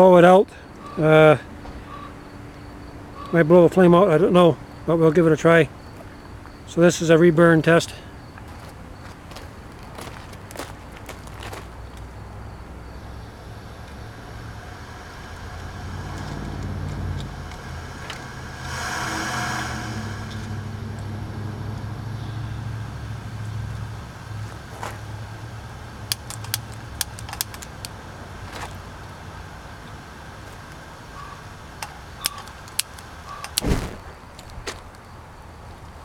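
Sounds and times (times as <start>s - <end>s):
truck engine idling: 10.7s - 33.6s
sharp clicks: 26.1s - 28.0s, 31.8s - 33.9s.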